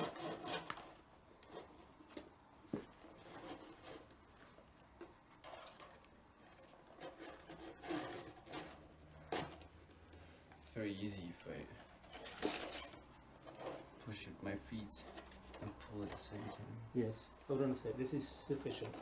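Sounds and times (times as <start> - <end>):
leather strap scraping on drum: 0.0 - 1.9, 2.7 - 9.9, 11.8 - 16.8.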